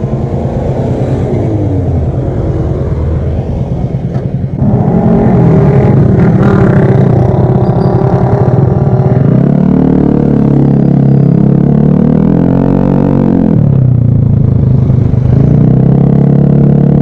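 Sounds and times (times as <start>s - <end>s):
scooter engine revving: 3.9s - 17.0s.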